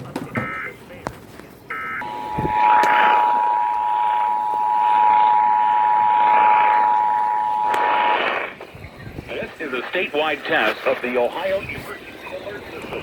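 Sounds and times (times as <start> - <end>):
two-tone alarm tone: 1.7 - 8.6
radio reception hiss: 1.7 - 13.0.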